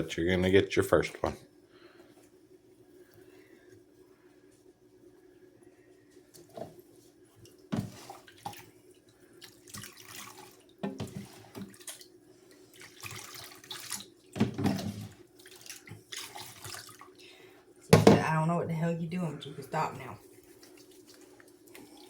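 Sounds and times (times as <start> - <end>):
water splashing in a sink: 7.4 - 17.2, 20.4 - 22.0.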